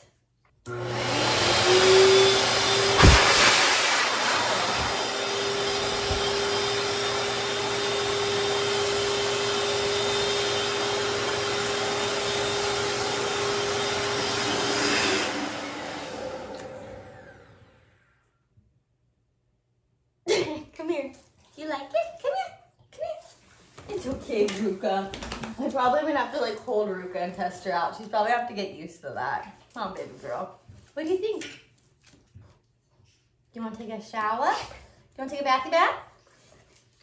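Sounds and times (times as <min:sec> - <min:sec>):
pet hair dryer blowing: 0:00.7 - 0:17.7
sharp knock: 0:03.0 - 0:03.8.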